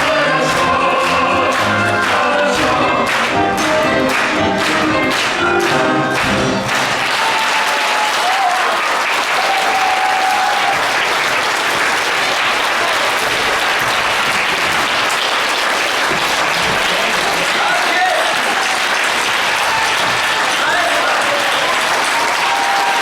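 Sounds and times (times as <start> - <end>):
music: 0.0 - 7.4
audience applauding: 0.0 - 23.0.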